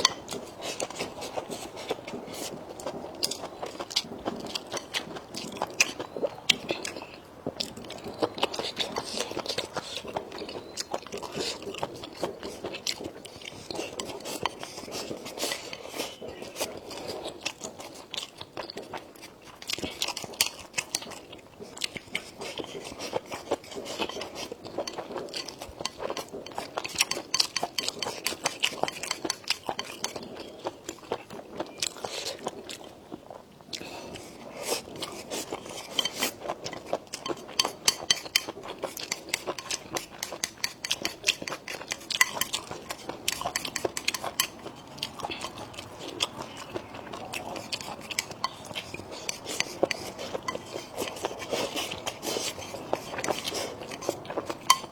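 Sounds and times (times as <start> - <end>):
person chewing crunchy food: 0.0 - 54.9
utensils clicking against dish: 24.0 - 30.2, 35.9 - 44.6, 52.4 - 54.9.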